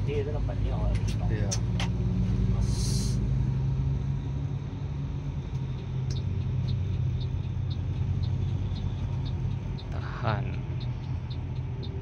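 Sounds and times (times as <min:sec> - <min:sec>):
low engine drone: 0:00.0 - 0:12.0
road rumble: 0:00.0 - 0:12.0
faint ticking: 0:05.5 - 0:12.0.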